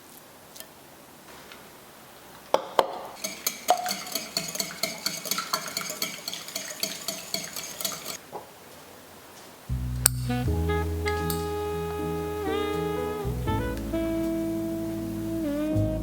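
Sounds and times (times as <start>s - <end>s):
utensil clinking in a bowl: 3.2s - 8.2s.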